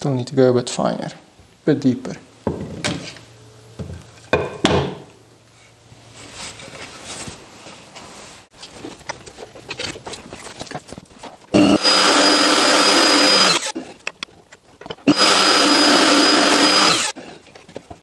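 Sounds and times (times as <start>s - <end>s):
router whining while cutting wood: 11.6s - 13.8s, 15.1s - 17.2s.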